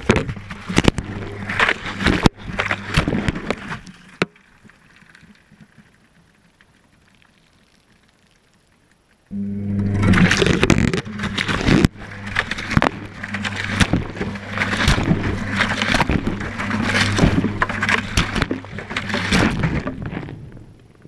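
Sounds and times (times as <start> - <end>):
washing machine motor hum: 0.0 - 3.7, 9.3 - 20.8
water sloshing in drum: 0.0 - 6.2, 9.3 - 21.0
wet load knocking: 10.1 - 20.6.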